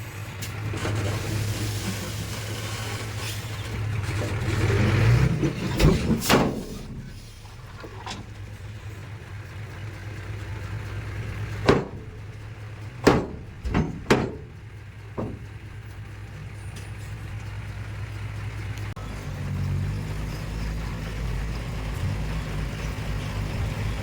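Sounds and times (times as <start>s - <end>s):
heavy diesel machinery running: 0.0s - 24.0s
metallic clanks: 5.2s - 9.1s, 10.3s - 17.7s.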